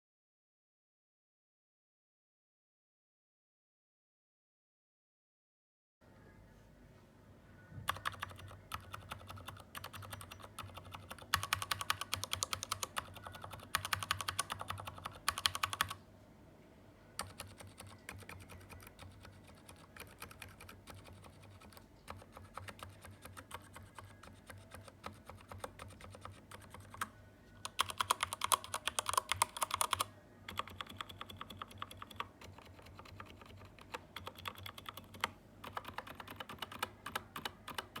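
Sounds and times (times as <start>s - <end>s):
fast mechanical keyboard typing: 7.8s - 16.0s, 17.2s - 38.0s.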